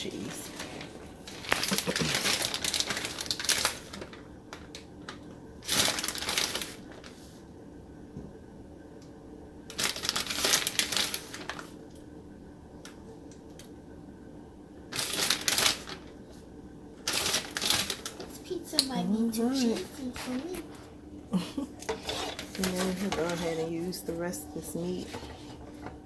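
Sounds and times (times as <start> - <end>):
plastic bag crinkling: 0.1 - 7.2, 9.7 - 11.8, 14.9 - 16.4, 17.0 - 18.6, 21.9 - 24.1.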